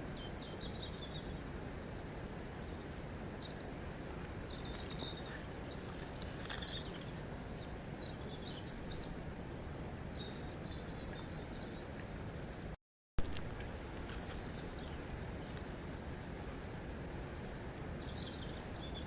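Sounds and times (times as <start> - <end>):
small birds chirping: 0.0 - 1.4, 2.1 - 12.8, 14.4 - 16.4, 17.6 - 19.0
flowing water: 13.2 - 19.0.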